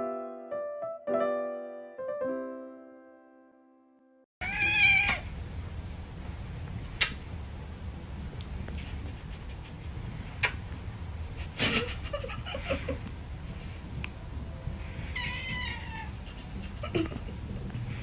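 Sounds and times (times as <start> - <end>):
piano notes: 0.0 - 4.2, 13.9 - 15.9
cat meowing: 4.4 - 5.3, 15.0 - 16.2
low room noise: 4.4 - 18.0.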